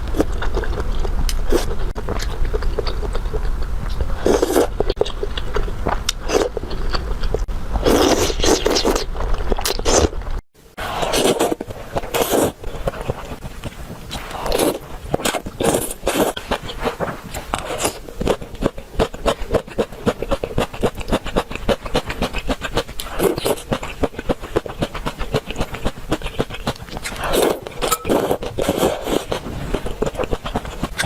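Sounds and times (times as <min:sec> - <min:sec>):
chewing crunchy food: 0:00.0 - 0:31.0.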